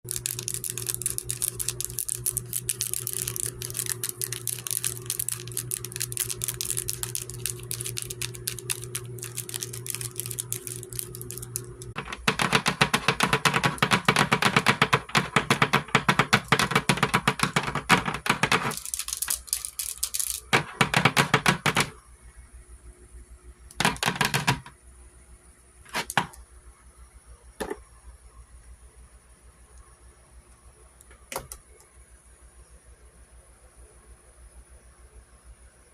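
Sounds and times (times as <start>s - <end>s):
low steady hum: 0.0s - 24.0s
fingernails tapping and clicking: 0.1s - 22.0s.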